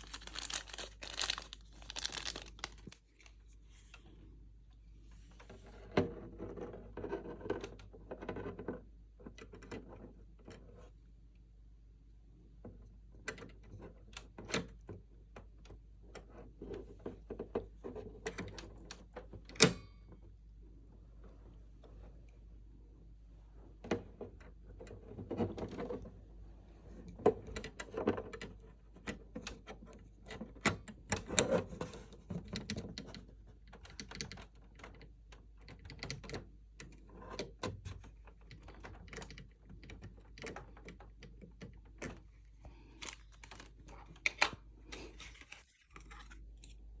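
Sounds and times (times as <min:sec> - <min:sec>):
rustling: 0:00.0 - 0:04.0.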